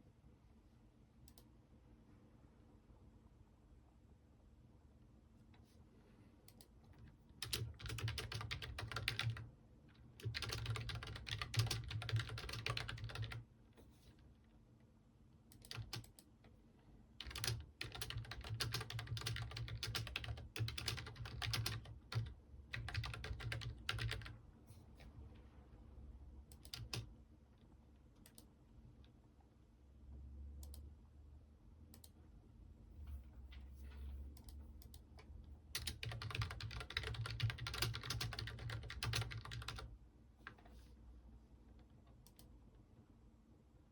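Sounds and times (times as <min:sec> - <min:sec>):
typing on a computer keyboard: 0:06.5 - 0:13.5, 0:15.5 - 0:16.3, 0:17.2 - 0:24.4, 0:26.5 - 0:27.1, 0:34.4 - 0:40.7.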